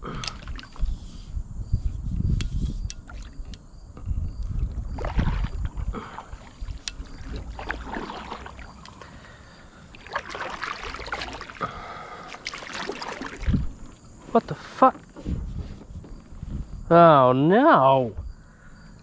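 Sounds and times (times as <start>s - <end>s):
paddle splashing in water: 4.9s - 14.0s.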